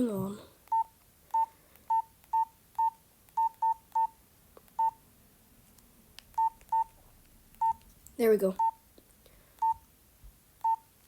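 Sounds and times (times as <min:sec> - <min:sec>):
phone keypad beeps: 0:00.7 - 0:04.2, 0:04.8 - 0:05.0, 0:06.4 - 0:06.9, 0:07.6 - 0:07.8, 0:08.6 - 0:08.8, 0:09.6 - 0:09.8, 0:10.6 - 0:10.9.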